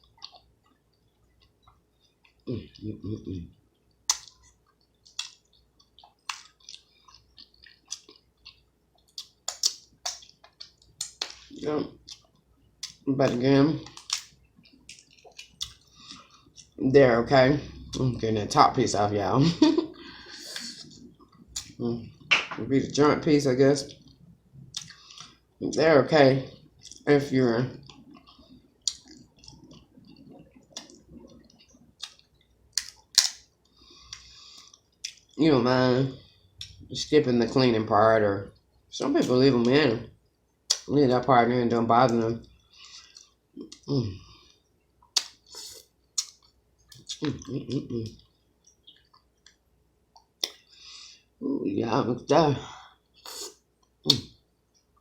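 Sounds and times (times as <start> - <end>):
person chewing food: 0.0 - 18.3, 19.8 - 22.3, 23.8 - 25.6, 27.7 - 35.4, 42.1 - 51.3
wet chewing: 3.8 - 16.8
shrimp shell cracking: 32.8 - 33.4
wet mouth smacking: 50.2 - 50.6.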